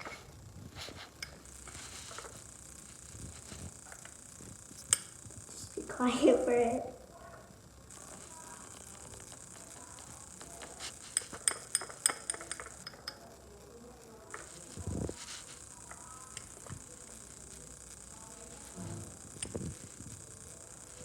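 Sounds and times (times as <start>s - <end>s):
spoon clinking against dish: 11.1s - 13.2s.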